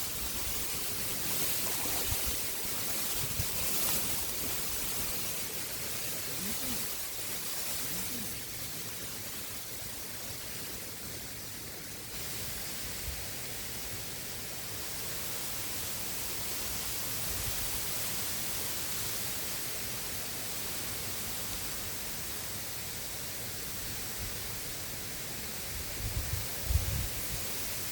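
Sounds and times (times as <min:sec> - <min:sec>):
river flowing: 0:00.0 - 0:13.7
wind rumble on microphone: 0:01.6 - 0:05.1, 0:25.7 - 0:27.6.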